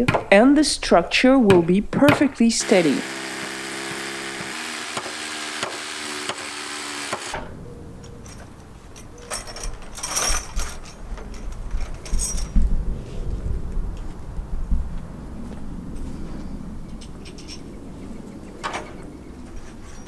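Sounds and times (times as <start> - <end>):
impact driver whining and clicking: 2.6 - 7.5.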